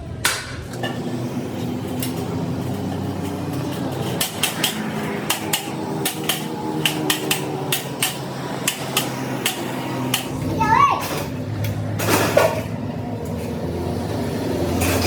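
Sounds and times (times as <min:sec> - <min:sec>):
machine hum: 0:00.0 - 0:15.0
hammer striking metal: 0:03.0 - 0:10.3.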